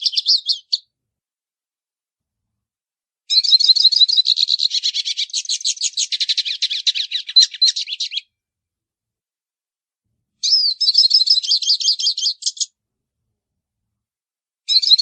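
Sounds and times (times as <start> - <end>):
bird twittering song: 0.0 - 0.9, 3.3 - 8.3, 10.4 - 12.7, 14.7 - 15.0.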